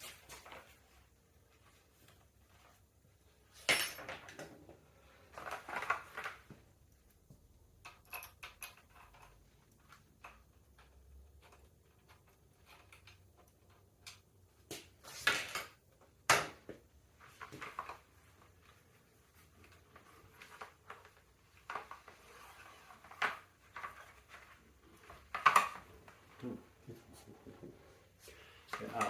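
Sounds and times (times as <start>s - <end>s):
bike parts and tools clinking: 3.5s - 4.6s, 7.8s - 18.8s.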